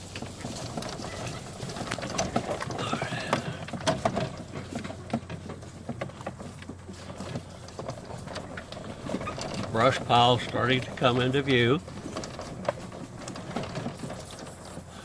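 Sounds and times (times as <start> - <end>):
golf cart body rattling: 0.0 - 15.0
golf cart drive hum: 0.0 - 15.0.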